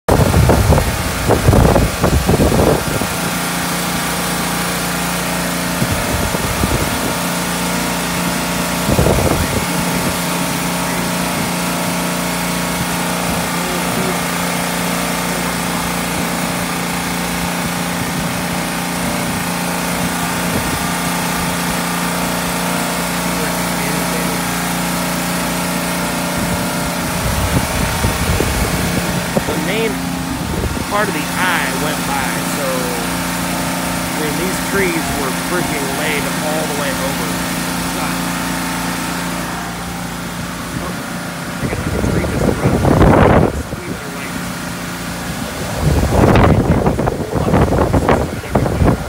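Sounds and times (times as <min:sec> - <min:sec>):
engine idling: 0:00.1 - 0:49.0
low rushes: 0:00.1 - 0:49.0.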